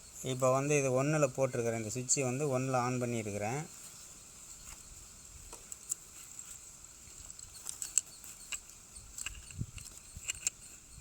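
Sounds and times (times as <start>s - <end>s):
faint high-pitched hiss: 0.0s - 11.0s
small objects clicking: 7.2s - 10.8s.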